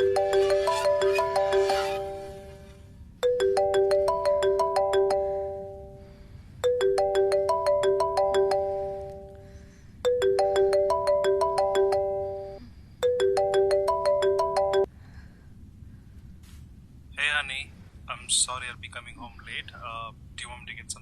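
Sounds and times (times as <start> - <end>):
phone ringtone plucked melody: 0.0 - 14.9.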